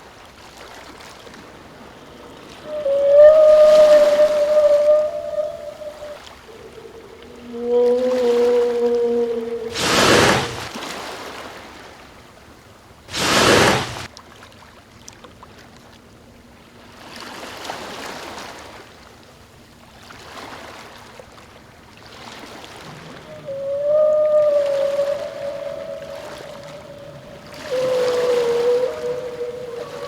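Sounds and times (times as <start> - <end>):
sea water washing: 1.6 - 10.7, 13.1 - 14.1, 23.0 - 30.0
whale blowing: 1.7 - 10.7, 13.1 - 14.1, 23.0 - 30.0.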